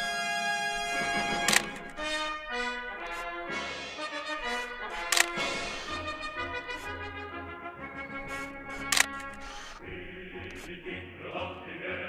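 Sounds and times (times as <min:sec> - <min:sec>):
brass instruments playing melody: 0:00.0 - 0:09.4.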